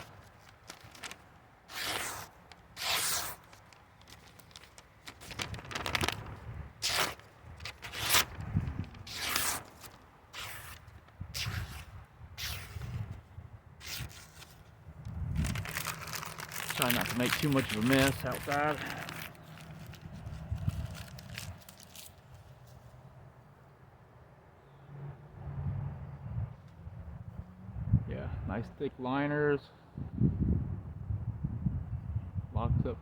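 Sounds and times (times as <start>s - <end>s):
knife slicing through paper: 0.0s - 13.2s, 13.8s - 14.7s, 15.3s - 22.3s
low rumble of wind or traffic: 0.0s - 33.0s.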